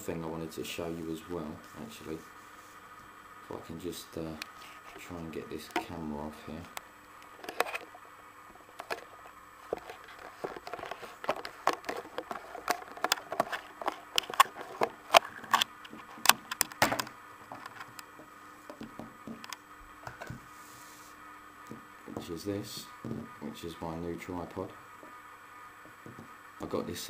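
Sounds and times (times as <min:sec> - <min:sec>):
camera handling clicks and knocks: 0:09.7 - 0:17.9.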